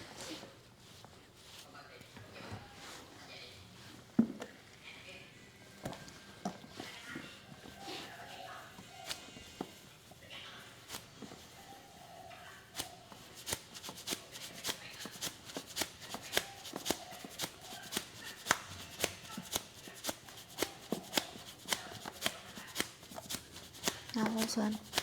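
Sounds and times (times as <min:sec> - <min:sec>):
hands slapping body: 0:12.8 - 0:25.0.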